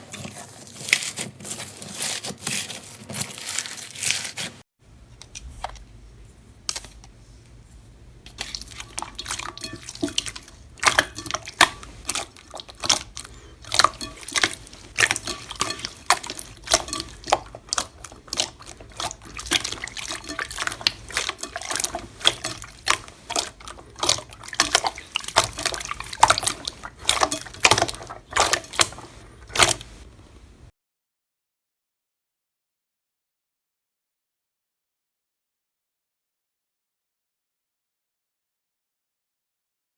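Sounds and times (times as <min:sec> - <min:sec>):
slime squishing with wet pops: 0:08.3 - 0:30.6.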